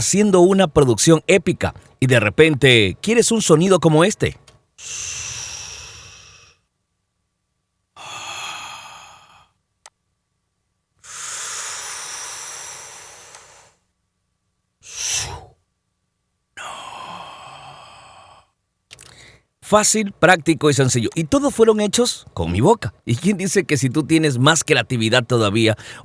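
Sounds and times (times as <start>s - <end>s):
breathy mouth whoosh: 4.8s - 6.6s, 14.8s - 15.6s
mouth hiss: 4.8s - 6.6s, 11.0s - 13.8s, 14.8s - 15.6s
tiny mouth click: 18.9s - 19.2s.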